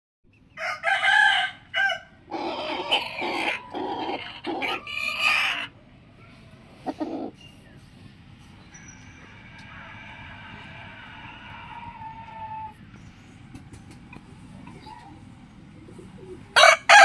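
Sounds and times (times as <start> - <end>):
rooster crowing: 0.6 - 5.7, 9.2 - 12.8, 16.6 - 17.0.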